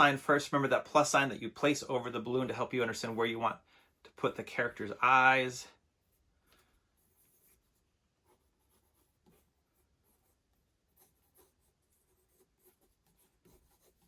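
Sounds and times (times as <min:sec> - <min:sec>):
pencil strokes on paper: 0:06.0 - 0:14.0.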